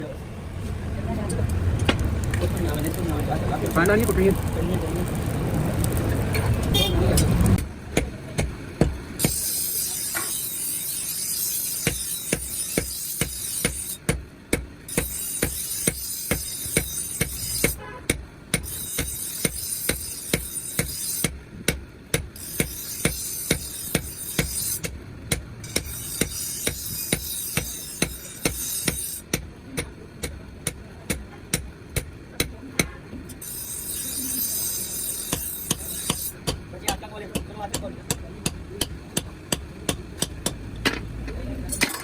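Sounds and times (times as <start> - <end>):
hammer striking iron on anvil: 35.1 - 41.0.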